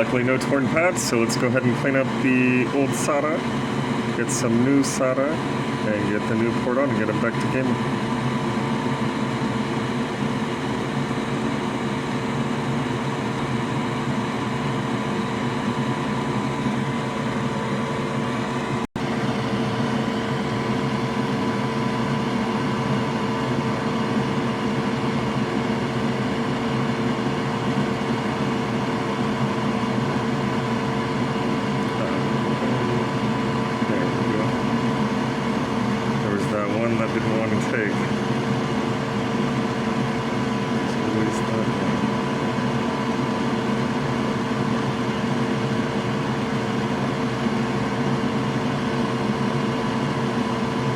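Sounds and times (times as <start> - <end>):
electric fan whirring: 0.0 - 50.9.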